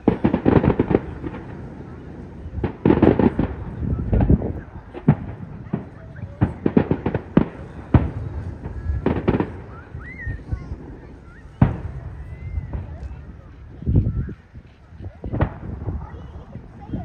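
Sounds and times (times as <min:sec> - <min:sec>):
loud firework bang: 0:00.0 - 0:13.4
fireworks bangs and crackles: 0:00.0 - 0:17.0.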